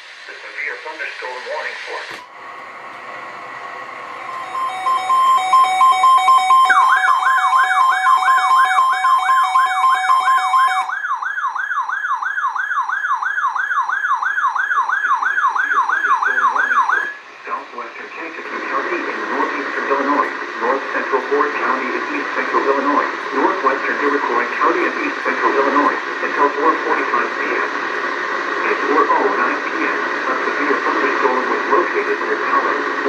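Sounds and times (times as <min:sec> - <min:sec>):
rapid two-pitch beeping: 0:04.3 - 0:11.0
fast yelping siren tone: 0:04.3 - 0:17.2.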